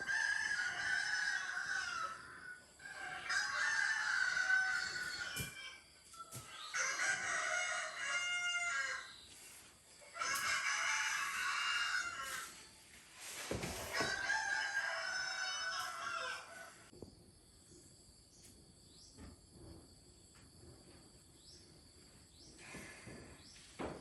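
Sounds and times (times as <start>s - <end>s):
rooster crowing: 0.0s - 5.9s, 6.6s - 9.1s, 10.1s - 12.6s, 13.8s - 16.9s.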